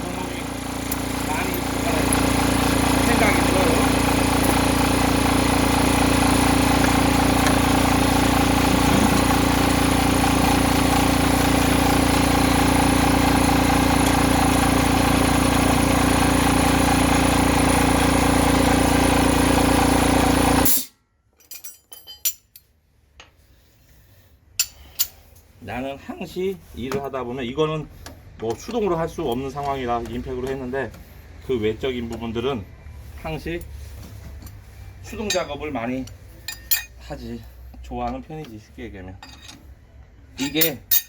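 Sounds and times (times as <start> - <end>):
machine motor humming: 0.0 - 20.6.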